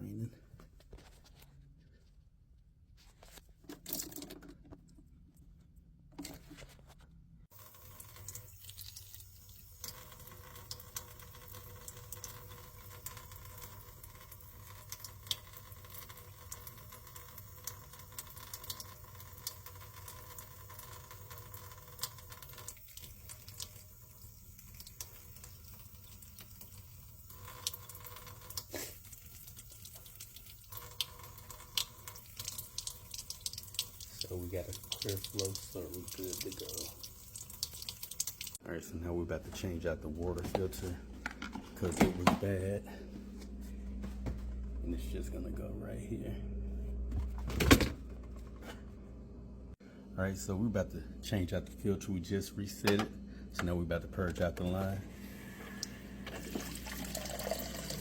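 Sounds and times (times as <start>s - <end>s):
water flushing through a drain tube: 7.5s - 38.6s, 55.4s - 58.0s
water patters and drips: 7.6s - 38.6s, 55.8s - 58.0s
steady hum: 38.8s - 56.3s.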